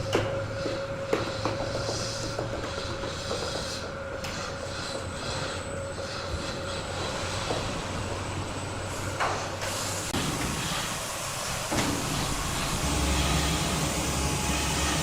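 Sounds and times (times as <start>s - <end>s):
saw machinery running: 10.0s - 15.0s.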